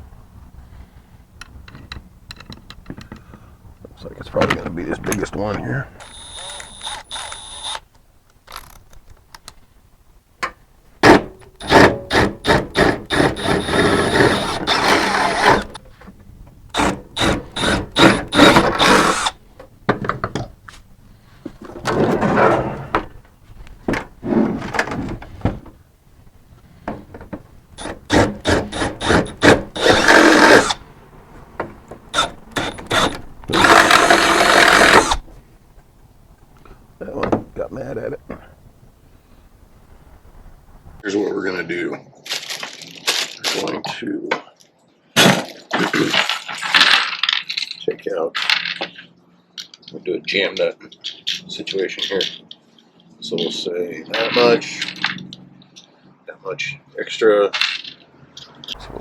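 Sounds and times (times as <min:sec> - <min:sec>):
power drill boring sheet metal: 0:06.0 - 0:07.8, 0:11.1 - 0:15.8, 0:16.8 - 0:19.4, 0:27.8 - 0:30.8, 0:32.1 - 0:35.2.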